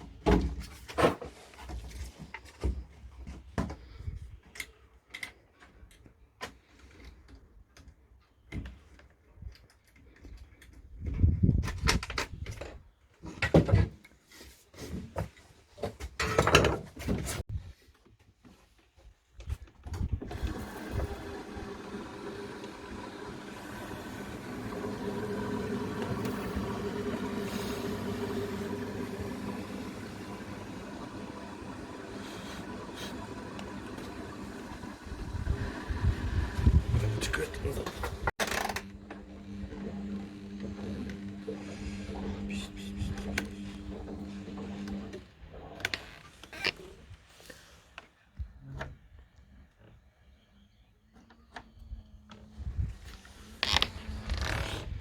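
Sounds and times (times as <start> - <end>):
washing machine running: 20.3 - 45.7.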